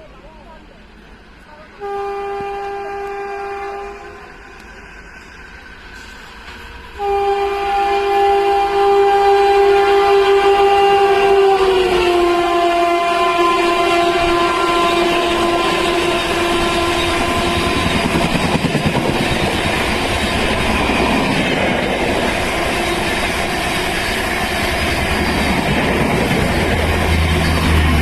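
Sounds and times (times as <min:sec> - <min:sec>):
train wheels on rails: 0:00.0 - 0:28.0
locomotive horn: 0:01.8 - 0:04.6, 0:07.0 - 0:18.4.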